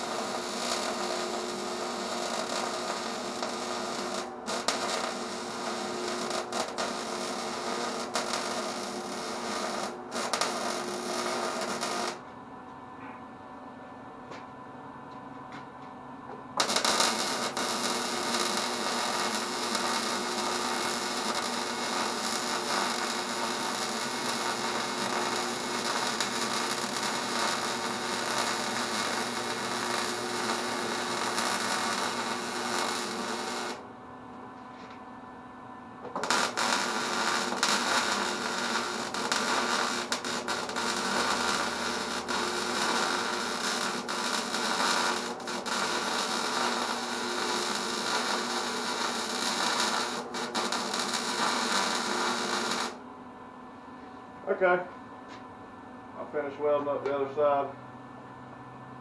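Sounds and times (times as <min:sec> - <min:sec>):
arc welding crackling hiss: 0:00.0 - 0:12.2, 0:16.6 - 0:33.8, 0:36.1 - 0:53.0.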